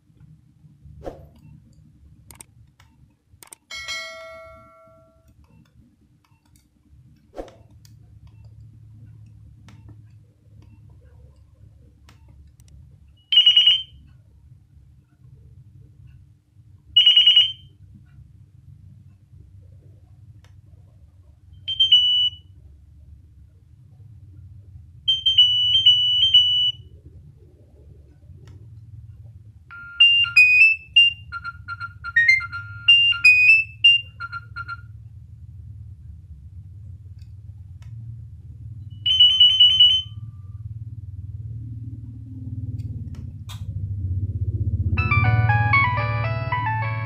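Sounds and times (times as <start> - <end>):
low steady hum: 0.0 - 47.0
mobile phone ringtone beeps: 13.4 - 13.9, 17.0 - 17.6, 29.7 - 34.9, 39.1 - 40.2, 45.0 - 47.0.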